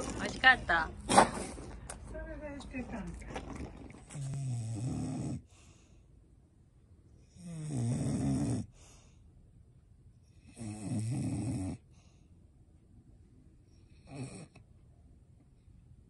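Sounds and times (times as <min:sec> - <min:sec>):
dog snoring loudly: 0:04.0 - 0:05.5, 0:07.2 - 0:08.8, 0:10.3 - 0:11.9, 0:13.9 - 0:14.6.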